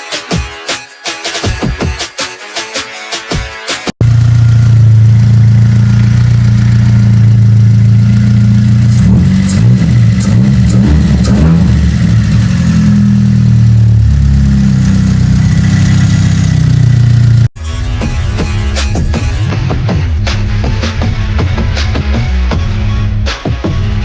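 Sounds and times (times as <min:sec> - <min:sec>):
car engine running: 0:04.0 - 0:17.6.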